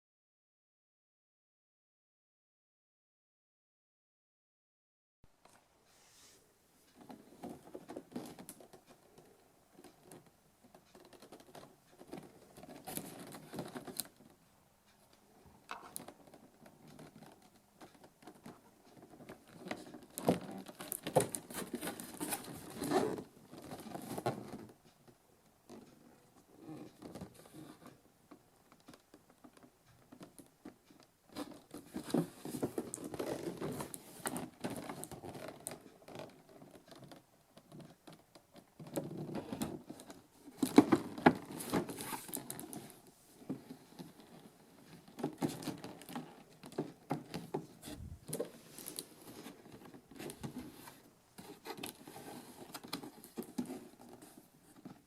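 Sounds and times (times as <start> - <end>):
cardboard box rustling and crinkling: 19.6 - 24.6, 31.7 - 35.9, 39.0 - 54.8.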